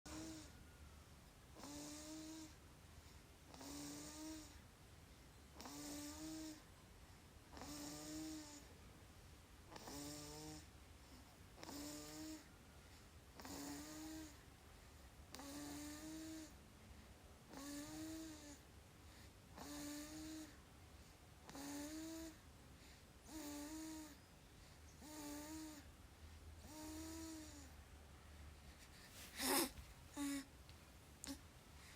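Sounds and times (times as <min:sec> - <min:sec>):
baby snoring: 0:00.1 - 0:00.6, 0:01.6 - 0:02.6, 0:03.5 - 0:04.6, 0:05.6 - 0:06.7, 0:07.5 - 0:08.7, 0:09.7 - 0:12.5, 0:13.3 - 0:14.4, 0:15.3 - 0:16.6, 0:17.5 - 0:20.6, 0:21.4 - 0:24.2, 0:25.0 - 0:25.9, 0:26.6 - 0:27.8, 0:28.8 - 0:30.5.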